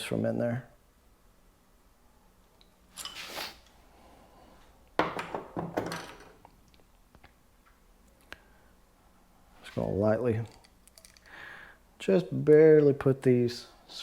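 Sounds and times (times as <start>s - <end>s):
parts knocking and clattering: 5.0s - 6.5s.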